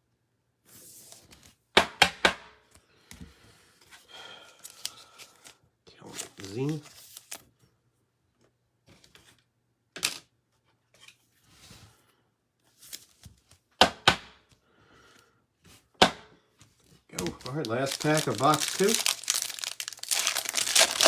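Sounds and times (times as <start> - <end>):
faint card rustling: 17.1 - 21.0.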